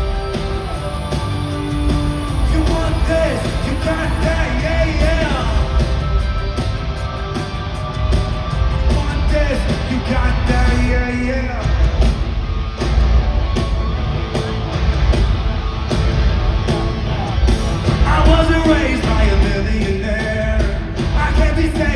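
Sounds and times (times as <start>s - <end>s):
person singing: 0.0s - 5.9s, 18.0s - 21.9s
drums: 0.0s - 21.9s
heavy bass: 0.0s - 21.9s
live rock band playing: 0.0s - 21.9s.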